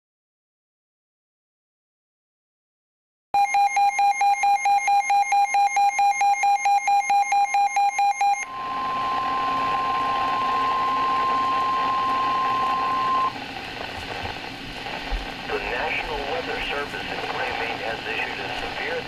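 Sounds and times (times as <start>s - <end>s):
steady warning alarm tone: 3.4s - 13.4s
radio hiss: 8.5s - 19.0s.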